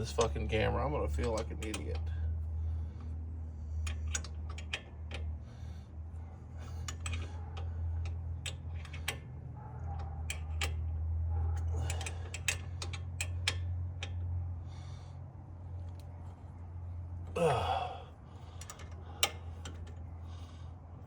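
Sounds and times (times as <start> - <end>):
steady low hum: 0.0 - 21.0
ratchet wrench clicking: 3.8 - 5.3, 18.6 - 20.0.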